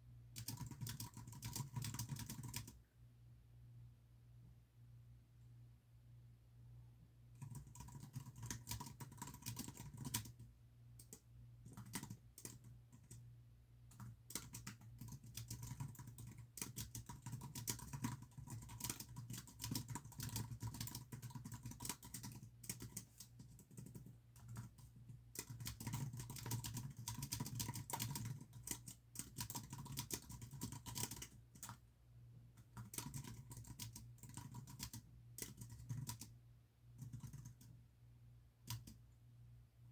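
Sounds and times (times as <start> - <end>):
fast typing on keyboard: 0.4 - 2.8, 7.4 - 13.2, 13.9 - 31.8, 32.6 - 36.4, 37.0 - 37.8, 38.7 - 39.0.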